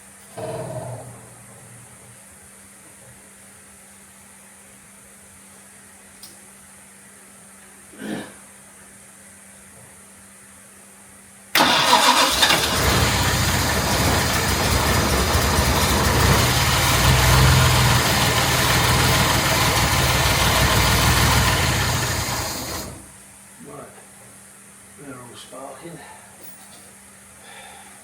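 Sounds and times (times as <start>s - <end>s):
car engine starting and running: 11.6s - 23.1s.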